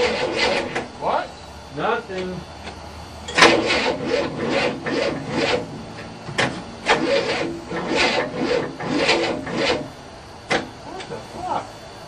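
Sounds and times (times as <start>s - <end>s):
car engine cranking not starting: 0.0s - 0.9s, 3.3s - 9.9s.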